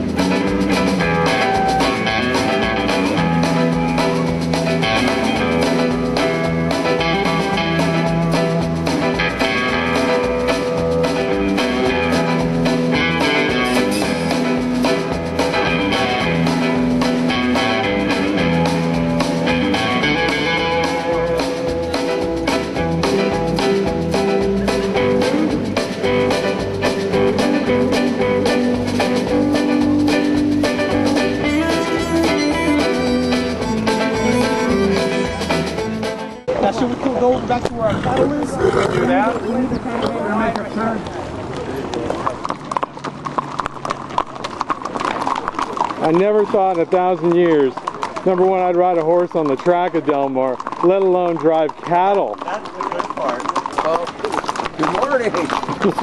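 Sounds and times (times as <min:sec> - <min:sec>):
guitar-led instrumental with drums: 0:00.0 - 0:37.8.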